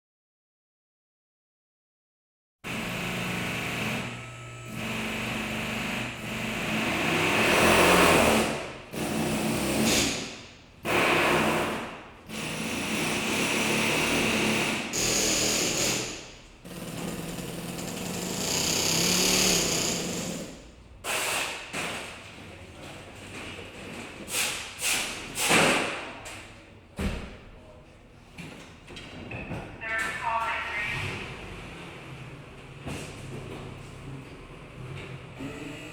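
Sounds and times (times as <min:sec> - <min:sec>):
power tool bursts: 0:12.3 - 0:21.6.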